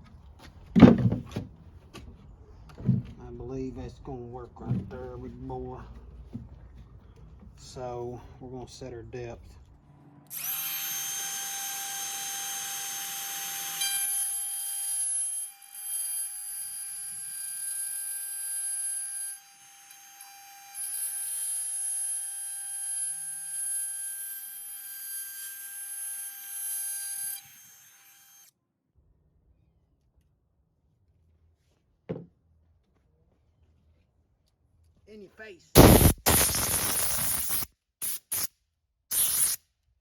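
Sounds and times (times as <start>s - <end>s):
electric router whining: 10.3s - 13.9s.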